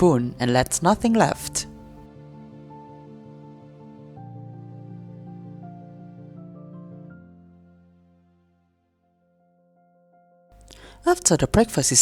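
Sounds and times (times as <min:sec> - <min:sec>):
soft instrumental music: 0:00.0 - 0:12.0.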